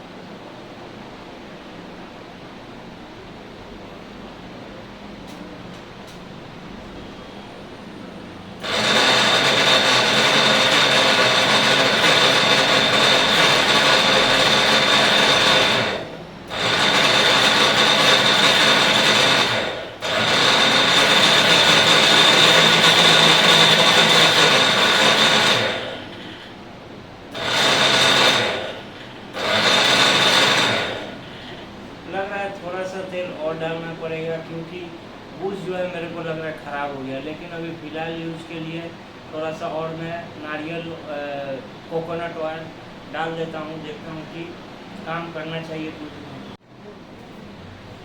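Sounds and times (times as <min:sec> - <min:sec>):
mixer grinder motor running: 0:08.5 - 0:36.1.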